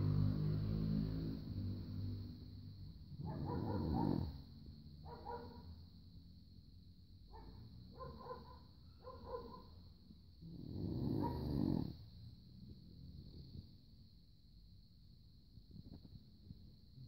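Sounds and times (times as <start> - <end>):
dog snoring: 3.2 - 4.4, 10.4 - 12.3.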